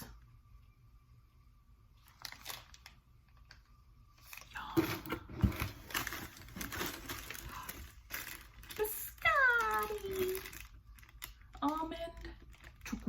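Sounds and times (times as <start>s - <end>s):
plastic wrappers crinkling: 2.0s - 4.7s, 5.6s - 13.0s.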